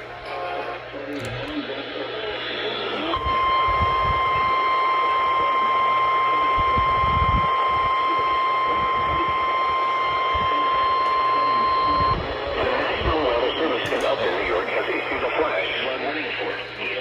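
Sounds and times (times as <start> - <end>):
radio hiss: 0.0 - 17.0
high-pitched alarm tone: 3.0 - 12.6.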